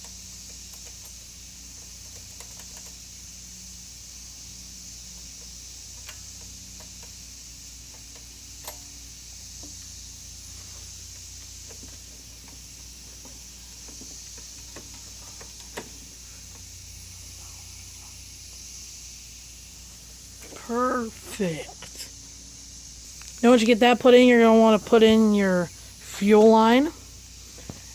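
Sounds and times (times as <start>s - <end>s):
small metal parts clicking: 0.0s - 3.2s
steady low hum: 0.0s - 27.9s.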